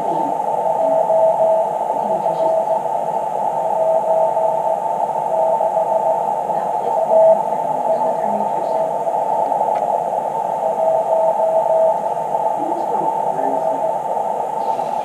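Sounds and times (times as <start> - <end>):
radio band hiss: 0.0 - 15.0
morse code beeps: 6.9 - 8.2.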